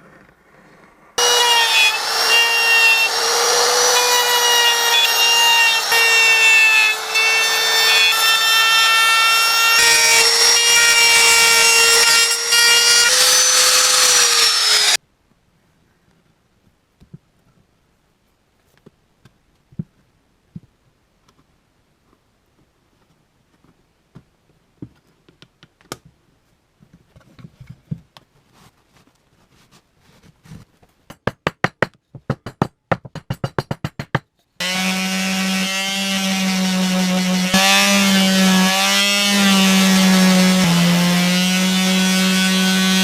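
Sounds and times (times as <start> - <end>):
power tool humming: 1.2 - 15.0, 34.6 - 43.0.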